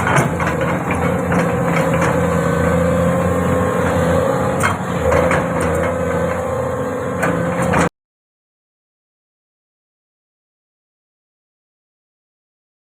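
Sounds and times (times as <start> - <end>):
excavator diesel engine running: 0.0 - 7.9.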